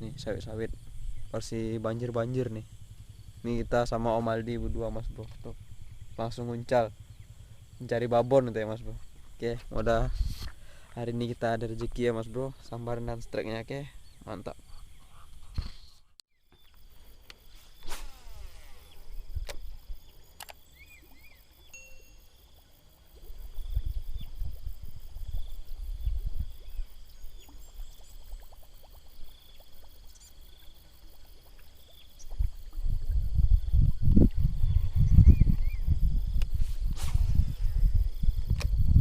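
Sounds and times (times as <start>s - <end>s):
low rumbling: 0.0s - 10.9s, 32.3s - 39.0s
insect chirps and clicks: 0.0s - 39.0s
high-pitched insect drone: 16.6s - 27.4s.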